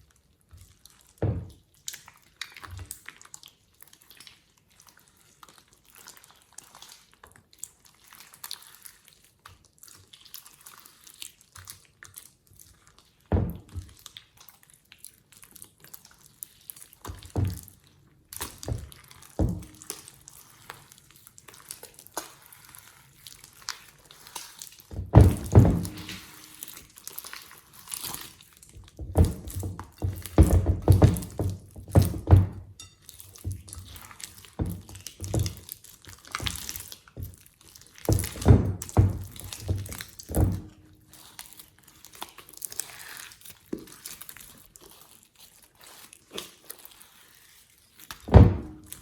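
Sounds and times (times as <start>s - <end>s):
slime squishing and crackling: 0.0s - 49.0s
slime squelching knocks: 18.6s - 20.0s, 24.9s - 26.6s, 28.8s - 35.7s, 38.1s - 41.0s, 48.3s - 49.0s.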